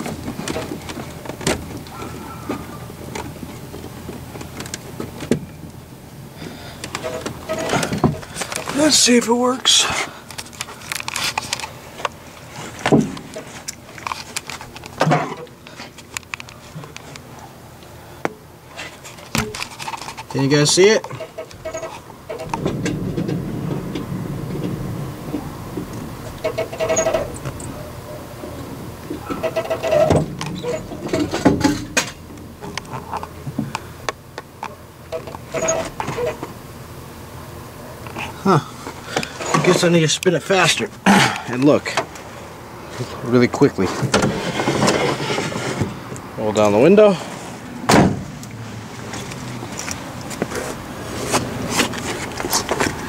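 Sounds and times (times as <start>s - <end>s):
clicks and knocks on car parts: 12.8s - 16.5s
accelerator pedal clicks and rattles: 18.2s - 36.6s
loud thuds: 22.3s - 27.7s, 47.8s - 48.4s.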